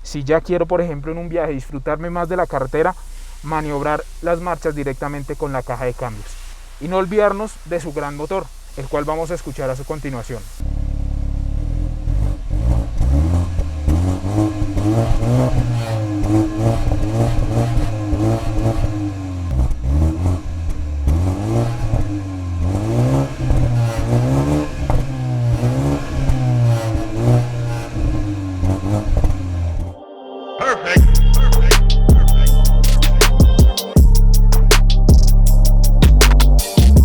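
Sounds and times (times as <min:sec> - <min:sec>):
car engine revving: 0:10.4 - 0:30.0.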